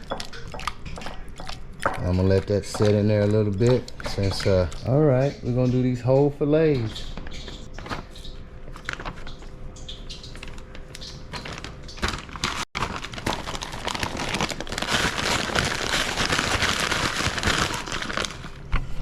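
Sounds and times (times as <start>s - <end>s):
plastic bag crinkling: 8.7s - 9.3s, 10.4s - 18.7s
breadcrumb coating crackling: 10.5s - 18.7s.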